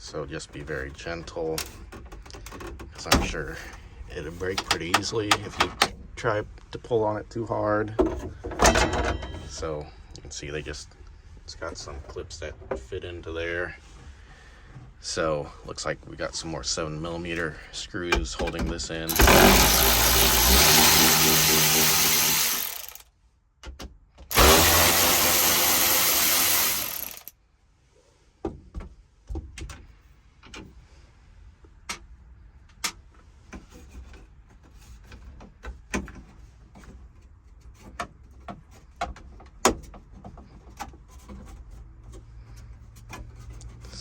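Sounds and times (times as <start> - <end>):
power drill running: 19.1 - 23.0, 24.3 - 27.3.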